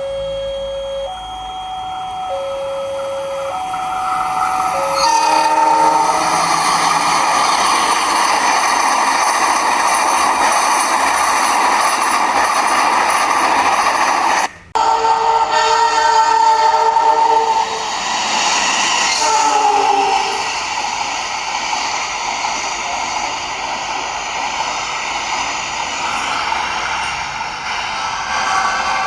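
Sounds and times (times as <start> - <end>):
two-tone electronic warning signal: 0.0 - 11.2
train passing: 0.0 - 29.0
locomotive horn: 4.2 - 7.7, 14.8 - 17.8.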